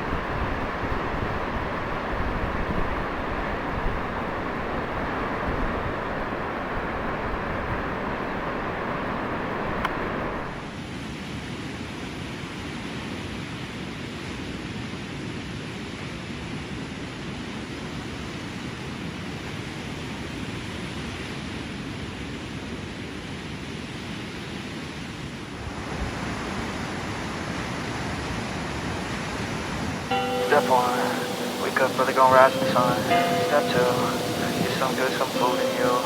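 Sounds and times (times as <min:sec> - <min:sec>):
waves breaking on a beach: 0:25.6 - 0:36.0.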